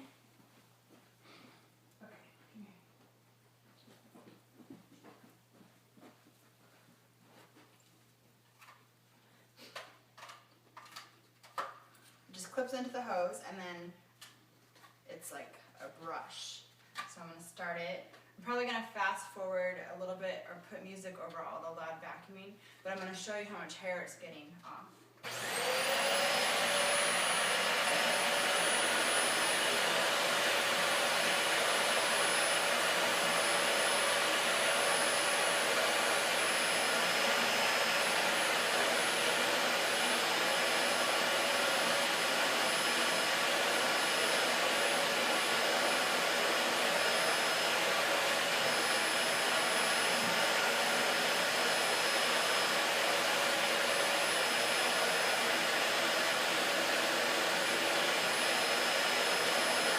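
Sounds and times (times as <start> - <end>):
vacuum cleaner running: 25.2 - 59.9.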